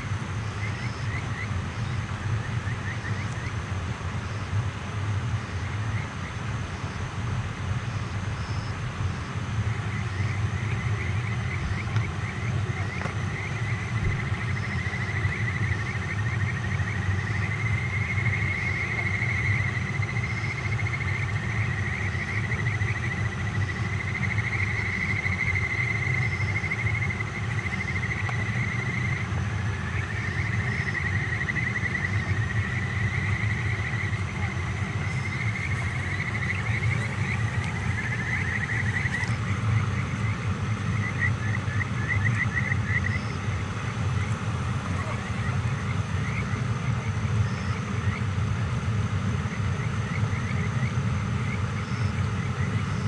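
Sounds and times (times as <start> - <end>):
faint regular insect ticks: 0.0 - 3.6, 7.9 - 53.0
night insects trilling: 0.0 - 53.0
low rumble: 26.7 - 48.6.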